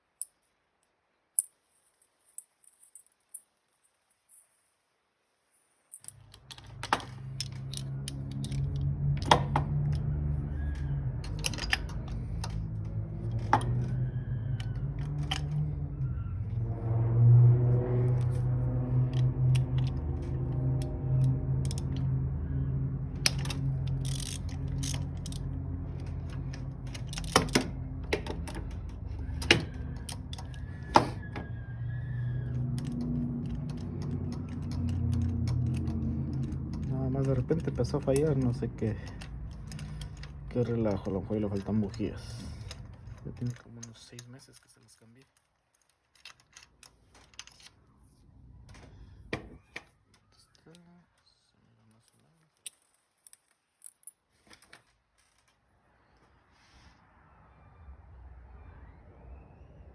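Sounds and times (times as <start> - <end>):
hand tools clicking and knocking: 5.9 - 15.7, 23.2 - 31.5, 32.4 - 47.7.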